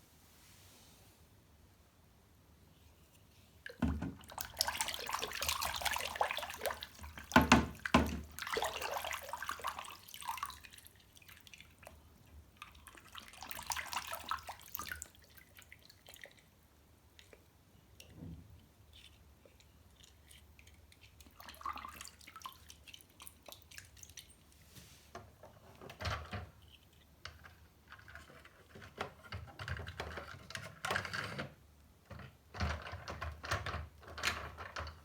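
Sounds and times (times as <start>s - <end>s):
tap water running and splashing: 3.7s - 16.5s, 21.0s - 24.2s.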